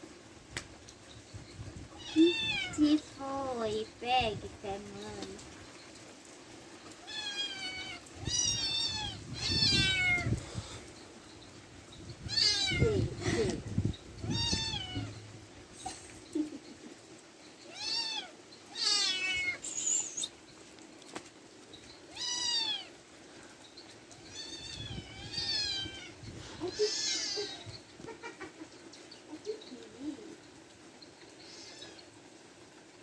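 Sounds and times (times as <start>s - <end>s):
cat meowing: 2.0s - 2.8s, 7.0s - 10.4s, 12.3s - 13.1s, 14.2s - 15.3s, 17.7s - 19.8s, 22.1s - 23.0s, 24.2s - 27.8s.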